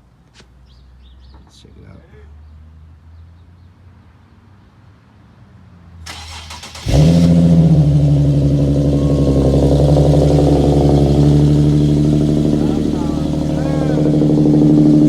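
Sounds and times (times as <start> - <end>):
starter motor cranking: 6.1 - 7.4
car engine revving and idling: 6.1 - 15.0.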